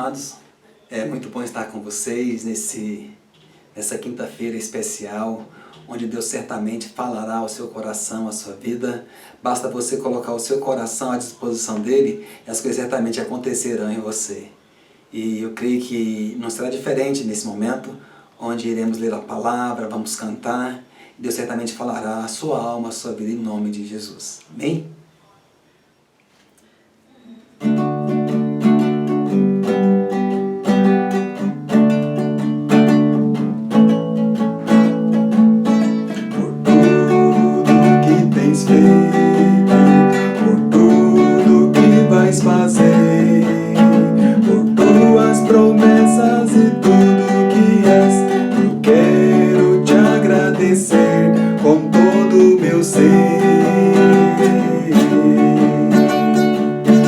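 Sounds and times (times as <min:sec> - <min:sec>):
acoustic guitar strumming chords: 0:27.4 - 0:57.0.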